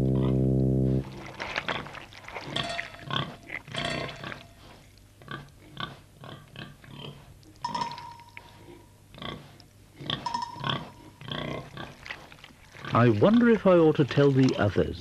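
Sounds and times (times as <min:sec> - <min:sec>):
held musical note: 0:00.0 - 0:01.3
pig grunting and snuffling: 0:01.0 - 0:13.5.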